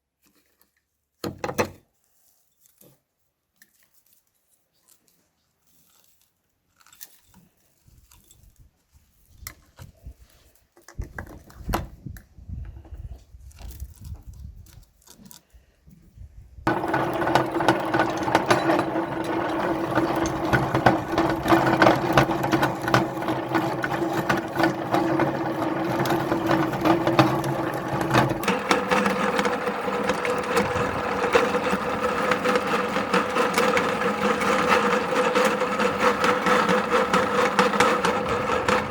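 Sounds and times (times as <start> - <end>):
electric meat grinder motor: 16.7 - 38.9
handling clicks and knocks: 16.7 - 38.9.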